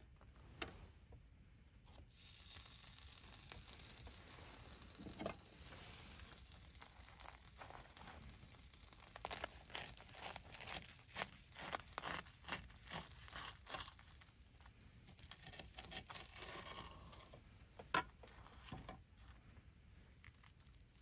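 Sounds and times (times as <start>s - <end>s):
food sizzling on gas burner: 2.1s - 13.9s.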